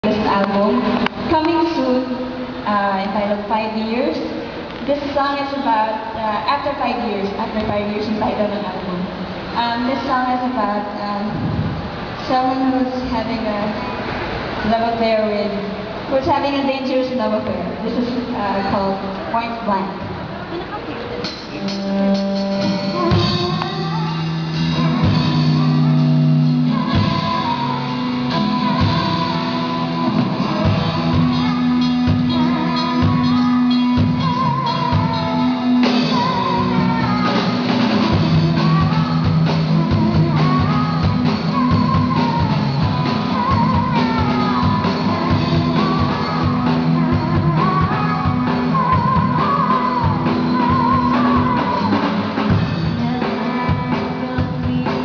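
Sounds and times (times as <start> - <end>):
rock band playing: 21.1 - 55.0
person singing: 21.6 - 55.0.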